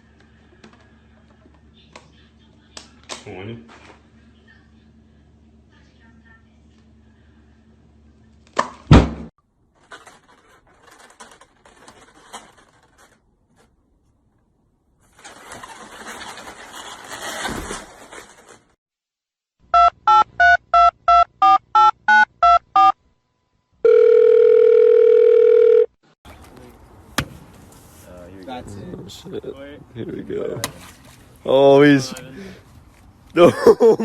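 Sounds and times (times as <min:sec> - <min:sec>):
loud thud: 0:08.8 - 0:09.3
touch-tone keypad beeps: 0:19.8 - 0:22.9.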